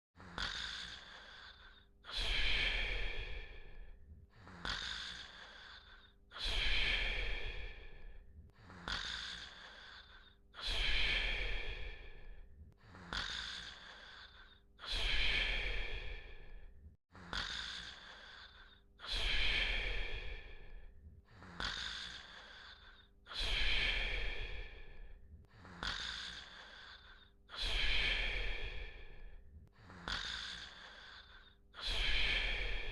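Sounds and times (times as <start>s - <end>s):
person snoring: 0.2s - 32.9s
soft breath out: 0.2s - 32.9s.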